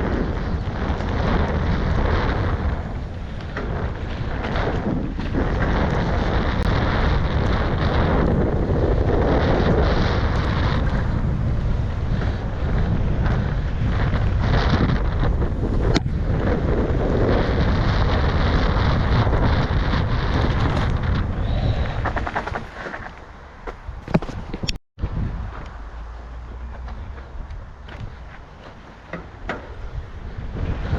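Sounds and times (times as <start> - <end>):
steady low rumble: 0.0 - 22.6
wind rushing over microphone: 0.0 - 30.9.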